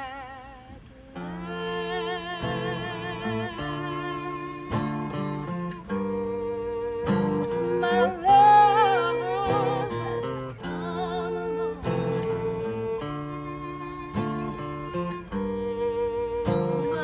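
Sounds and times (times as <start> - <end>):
plucked guitar: 1.0 - 17.0.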